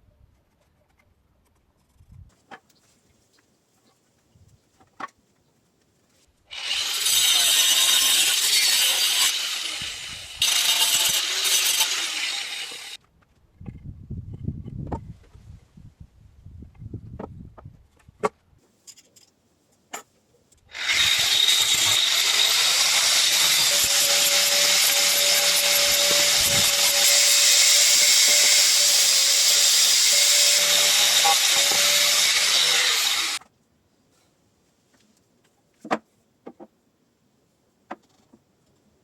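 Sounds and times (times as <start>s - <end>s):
power tool running on wood: 6.5s - 13.0s, 20.7s - 33.4s.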